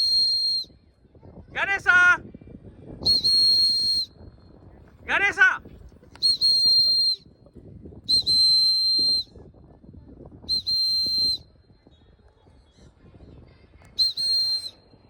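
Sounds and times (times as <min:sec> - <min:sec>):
shrill whistle blasts: 0:00.0 - 0:00.7, 0:03.0 - 0:04.2, 0:06.2 - 0:07.2, 0:08.1 - 0:09.3, 0:10.5 - 0:11.5, 0:14.0 - 0:15.0.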